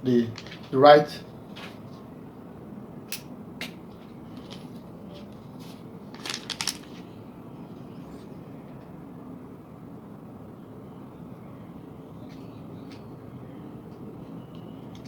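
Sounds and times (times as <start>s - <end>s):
small parts clicking: 6.1s - 7.0s.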